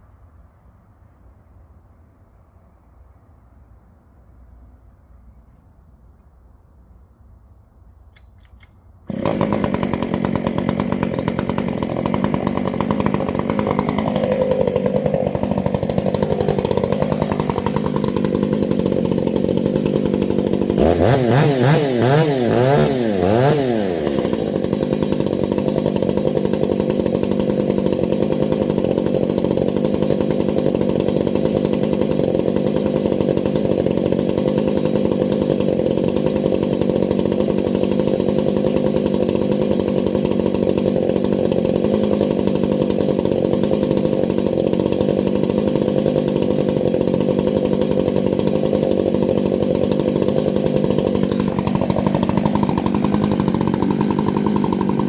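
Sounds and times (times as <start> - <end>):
chainsaw cutting log: 8.2 - 55.0.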